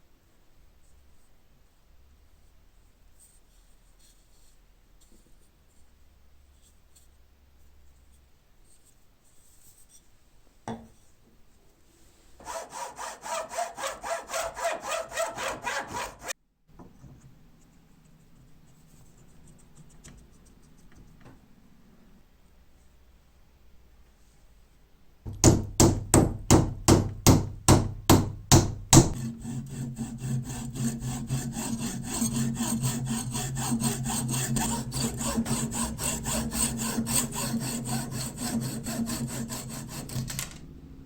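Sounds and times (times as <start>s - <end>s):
hand saw sawing wood: 12.4s - 16.4s, 25.4s - 40.4s
knock: 25.3s - 29.2s.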